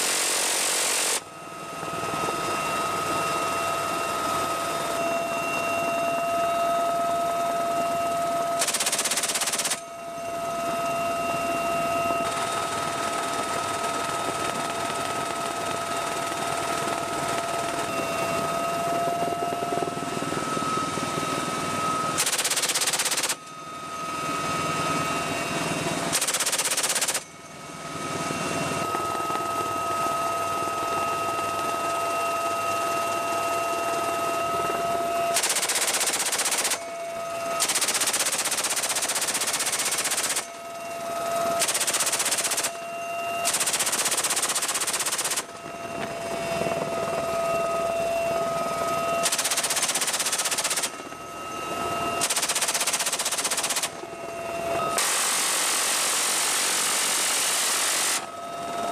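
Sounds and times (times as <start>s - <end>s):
helicopter turbine and rotor whine: 0.0s - 58.9s
machine gun firing bursts: 8.6s - 9.8s, 22.2s - 23.4s, 26.1s - 27.2s, 35.4s - 36.8s, 37.6s - 40.5s, 41.6s - 42.8s, 43.5s - 45.5s, 49.2s - 50.9s, 52.2s - 53.9s.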